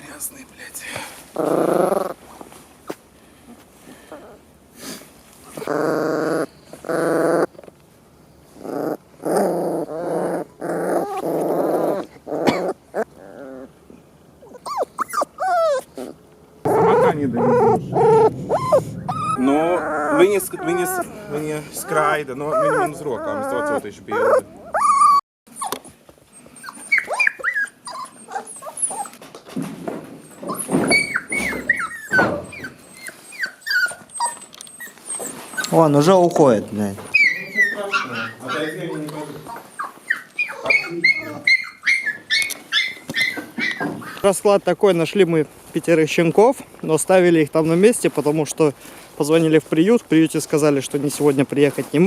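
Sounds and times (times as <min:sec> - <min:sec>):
rustling: 0:00.5 - 0:24.4, 0:28.6 - 0:37.9, 0:38.5 - 0:52.0
puppy growling and whining: 0:01.3 - 0:02.2, 0:04.1 - 0:04.5, 0:05.5 - 0:07.6, 0:08.5 - 0:29.2, 0:30.2 - 0:36.0, 0:37.1 - 0:44.2
puppy yelping: 0:05.6 - 0:07.6, 0:08.6 - 0:13.8, 0:14.4 - 0:29.2, 0:30.2 - 0:35.9, 0:37.1 - 0:44.3.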